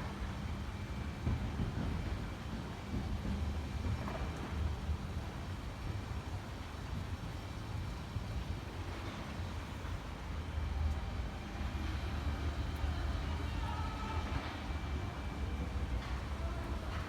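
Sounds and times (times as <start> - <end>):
low city rumble: 0.0 - 17.0
faint distant voices: 11.5 - 17.0.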